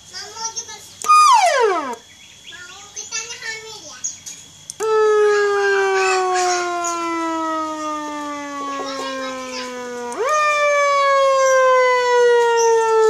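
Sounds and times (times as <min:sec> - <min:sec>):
electronic siren tone falling in pitch: 0:01.1 - 0:02.0, 0:04.8 - 0:13.0.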